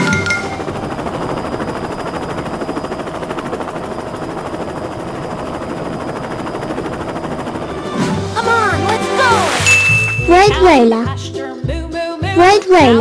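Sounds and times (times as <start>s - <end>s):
faint steady whine: 0.0s - 7.9s
helicopter rotor chopping: 0.0s - 9.7s.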